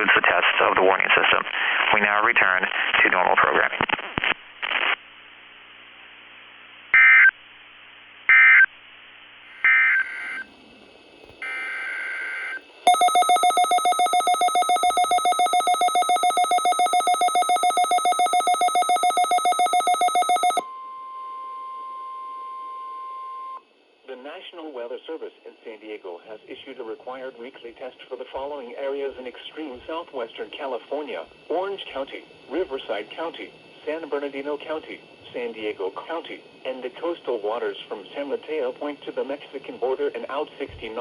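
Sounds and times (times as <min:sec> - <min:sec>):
digital data bursts: 0:12.9 - 0:20.6
harsh pulsing electronic tone: 0:12.9 - 0:20.6
steady warning alarm tone: 0:12.9 - 0:20.6.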